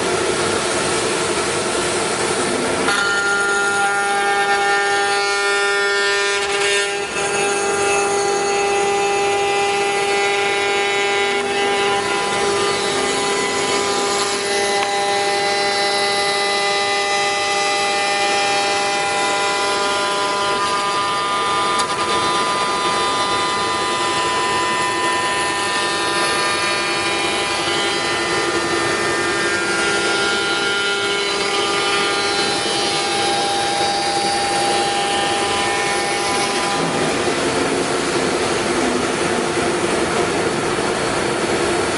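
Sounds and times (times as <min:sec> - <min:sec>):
router spindle whine: 0:02.1 - 0:41.9
rushing noise: 0:32.4 - 0:41.9.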